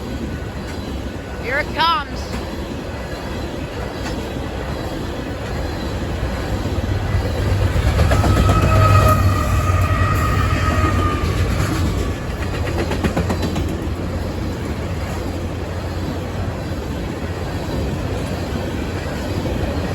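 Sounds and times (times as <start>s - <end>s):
freight train wheels rumbling on rail: 0.0s - 19.9s
wheels clacking over rail joints: 2.3s - 19.9s
high squeal of wheels: 7.2s - 12.4s.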